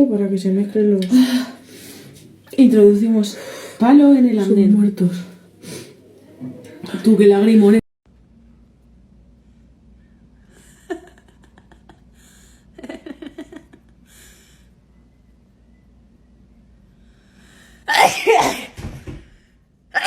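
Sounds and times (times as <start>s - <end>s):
catches of breath: 3.3s - 3.8s, 5.6s - 6.0s, 17.0s - 17.9s
person sneezing: 17.9s - 18.8s.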